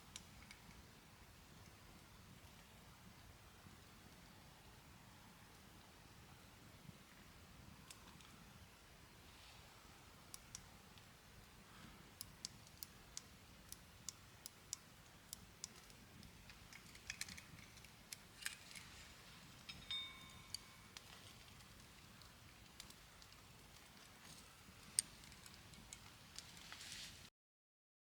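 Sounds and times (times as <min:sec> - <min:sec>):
sharp clicks and ticks: 0:12.2 - 0:18.6, 0:19.7 - 0:23.9
short metallic ring: 0:19.7 - 0:21.0.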